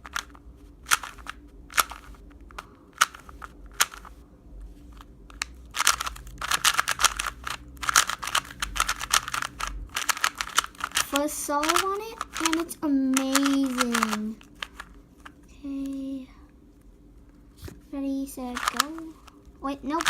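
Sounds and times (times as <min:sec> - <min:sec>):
plastic puzzle cube clicking: 0:00.0 - 0:04.1, 0:04.9 - 0:16.0, 0:18.5 - 0:19.4.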